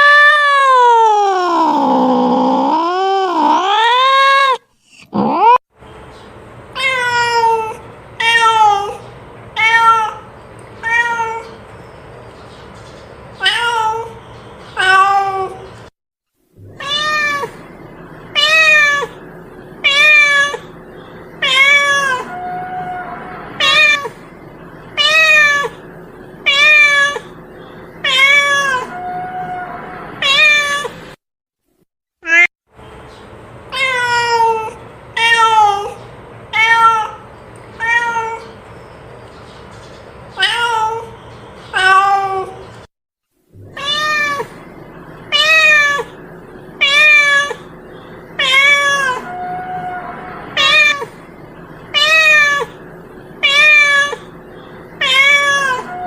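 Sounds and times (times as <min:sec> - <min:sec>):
cat meowing: 0:00.0 - 0:05.6, 0:09.6 - 0:11.6, 0:14.8 - 0:15.7, 0:16.7 - 0:17.6, 0:18.4 - 0:19.2, 0:19.8 - 0:20.7, 0:21.4 - 0:24.2, 0:25.0 - 0:25.8, 0:26.4 - 0:27.4, 0:28.0 - 0:31.0, 0:32.2 - 0:32.5, 0:33.7 - 0:37.2, 0:37.8 - 0:38.6, 0:40.4 - 0:42.6, 0:43.6 - 0:44.6, 0:45.3 - 0:46.2, 0:46.8 - 0:47.7, 0:48.4 - 0:51.2, 0:51.9 - 0:52.8, 0:53.4 - 0:54.4, 0:55.0 - 0:56.0.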